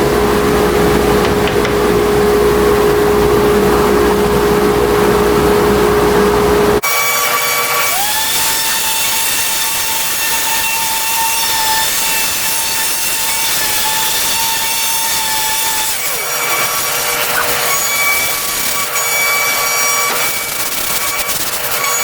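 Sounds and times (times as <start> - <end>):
machine whine: 0.0 - 22.0
router bit cutting material: 6.8 - 22.0.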